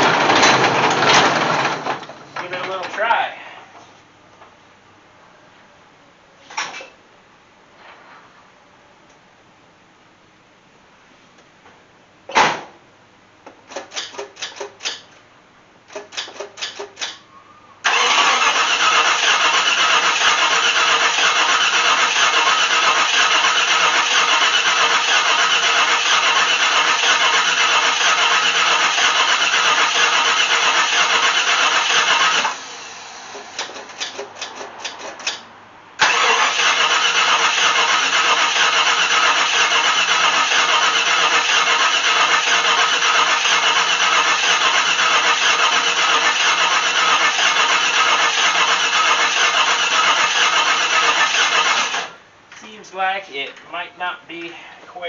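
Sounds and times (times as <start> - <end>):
engine cranking on starter: 0.0 - 2.8, 17.8 - 35.4, 36.0 - 52.2.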